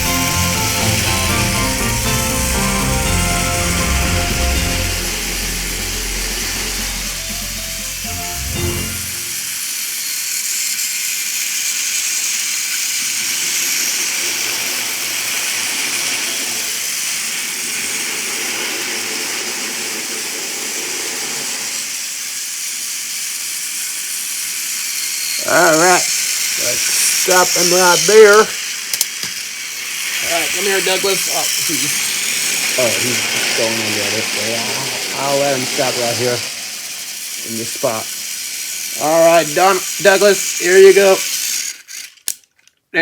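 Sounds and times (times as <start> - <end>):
background music: 0.0 - 9.6
toy train engines whirring: 0.0 - 43.0.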